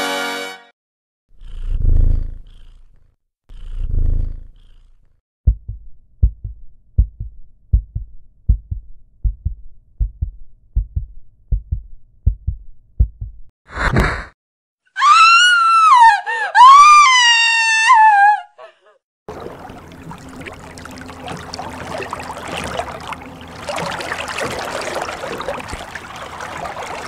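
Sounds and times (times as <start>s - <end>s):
cat purring: 1.4s - 4.9s
heartbeat thumps: 5.5s - 13.5s.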